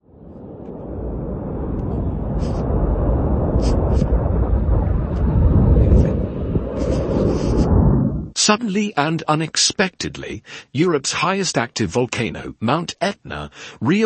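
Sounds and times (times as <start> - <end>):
volcano deep rumble: 0.0 - 8.4
hissing crackles: 0.3 - 8.0.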